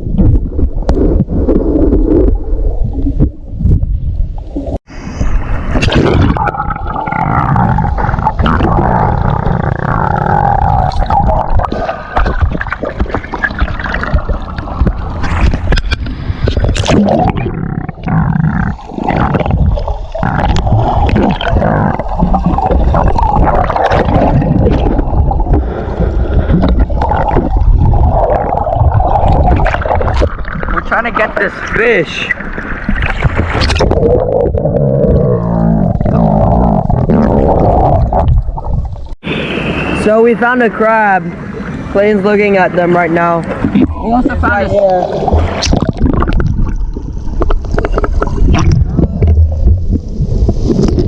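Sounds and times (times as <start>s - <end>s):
water sloshing and gurgling: 0.0s - 51.0s
droning low underwater tone: 43.4s - 51.0s.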